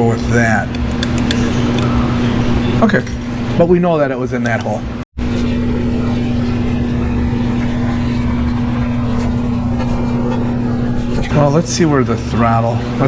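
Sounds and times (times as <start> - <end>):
low mechanical hum: 0.0 - 13.0
low rumble: 5.2 - 11.6.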